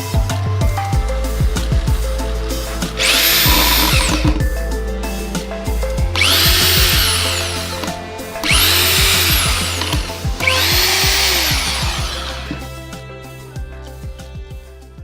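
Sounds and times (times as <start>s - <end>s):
background music: 0.0s - 15.0s
rotary hammer motor whine: 3.0s - 4.4s, 6.2s - 12.7s.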